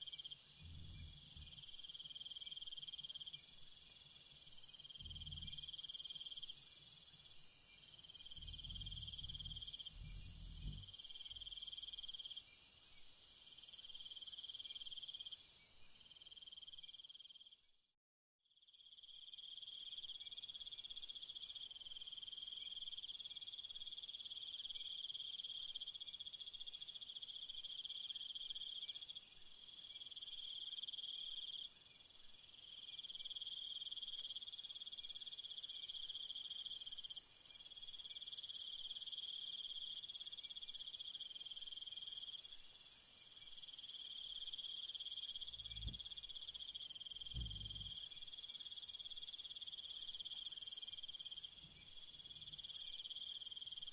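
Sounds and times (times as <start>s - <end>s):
crickets trilling: 0.0s - 17.4s, 33.0s - 53.9s.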